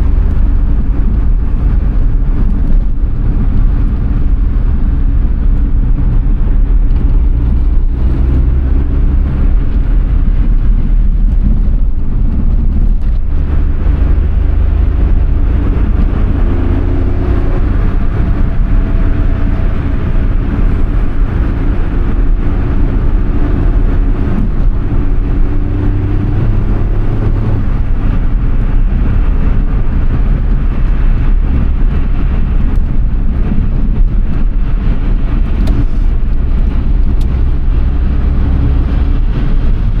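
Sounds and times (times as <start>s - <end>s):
car engine from inside: 0.0s - 40.0s
road noise: 0.0s - 40.0s.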